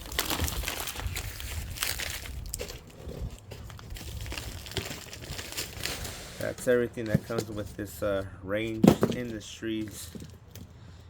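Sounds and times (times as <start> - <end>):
packaging crinkling and rustling: 0.0 - 8.0.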